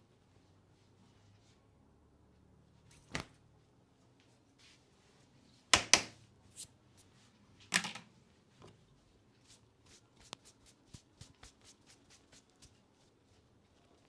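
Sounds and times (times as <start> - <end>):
hand slaps on head: 3.1 - 3.3.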